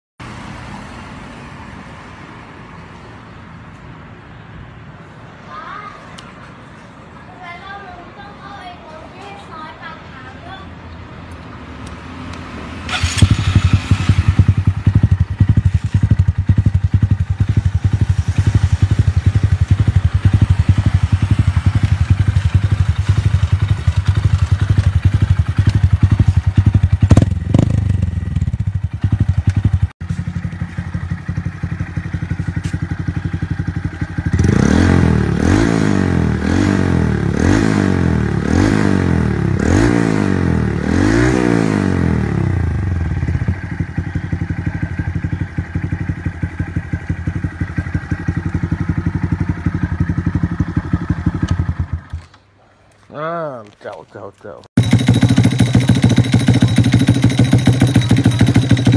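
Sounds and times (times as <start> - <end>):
motorcycle engine idling and revving: 10.8 - 52.5, 54.6 - 58.9.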